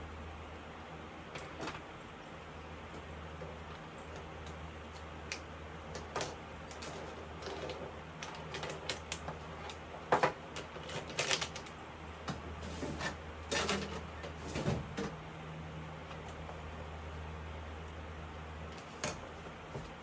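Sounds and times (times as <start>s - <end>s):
electric fan humming: 0.0s - 20.0s
objects clicking and rustling: 5.9s - 11.8s.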